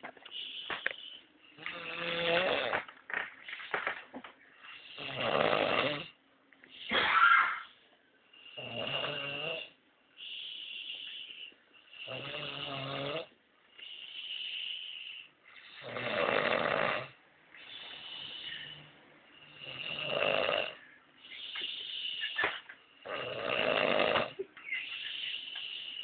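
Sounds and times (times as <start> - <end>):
faint high breathing: 0.2 - 1.7, 10.1 - 12.1, 17.5 - 19.7, 20.8 - 23.0, 24.6 - 26.0
woman snoring: 1.6 - 2.8, 4.8 - 6.1, 8.5 - 9.8, 12.0 - 13.3, 15.6 - 17.2, 19.4 - 20.8, 23.0 - 24.4.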